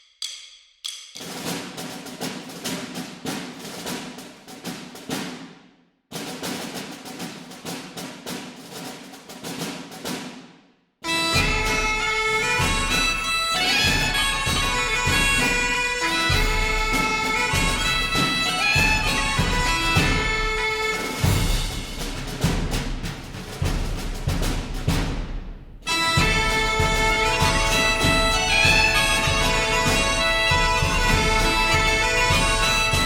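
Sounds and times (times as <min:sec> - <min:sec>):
quick rhythmic music pattern: 0:11.3 - 0:33.0
melody over steady beat: 0:25.9 - 0:33.0.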